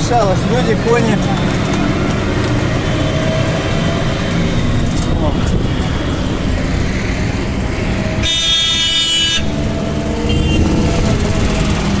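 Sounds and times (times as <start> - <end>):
dense city traffic: 0.0 - 12.0
faint horns tooting: 7.9 - 11.6
vehicle horn blaring: 8.2 - 11.0.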